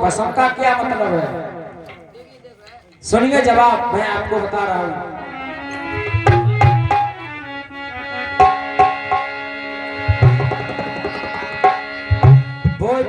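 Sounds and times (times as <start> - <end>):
harmonium chords: 3.4 - 13.0
tabla playing: 5.6 - 13.0.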